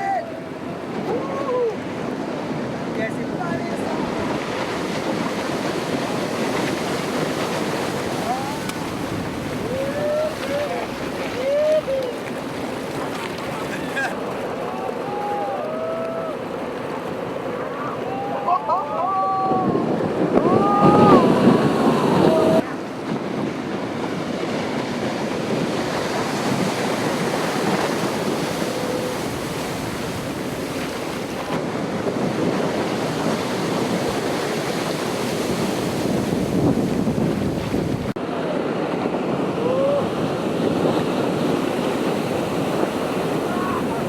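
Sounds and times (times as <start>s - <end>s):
ocean waves breaking: 0.0s - 44.0s.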